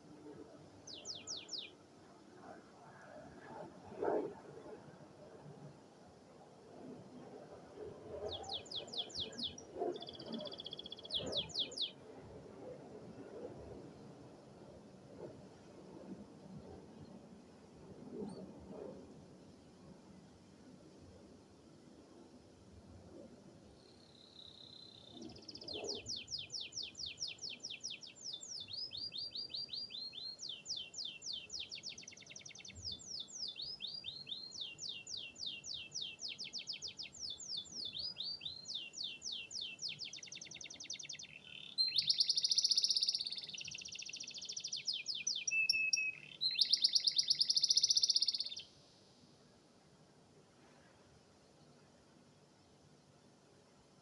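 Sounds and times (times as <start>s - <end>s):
canary singing trills: 0.9s - 1.7s, 8.3s - 12.0s, 24.3s - 48.7s.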